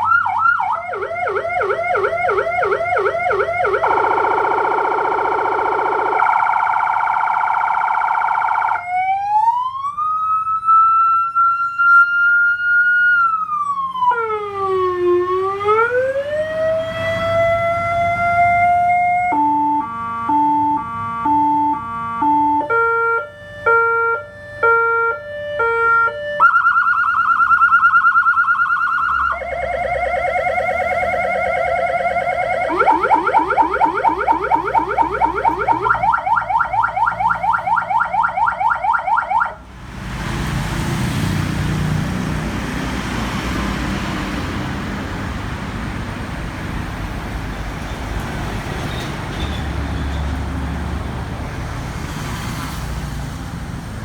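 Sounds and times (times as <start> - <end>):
electronic emergency siren: 0.0 - 39.6
vehicle and traffic rumble: 0.0 - 54.0.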